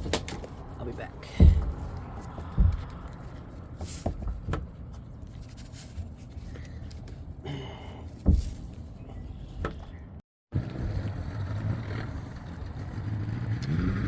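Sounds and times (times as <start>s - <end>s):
rustling handling noise: 0.0s - 7.4s
dull knocks: 1.3s - 3.2s, 8.2s - 8.6s.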